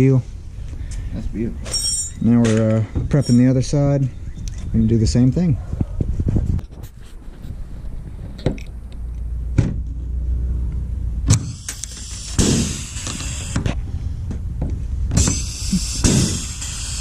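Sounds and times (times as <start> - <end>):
power drill drilling: 11.4 - 13.6.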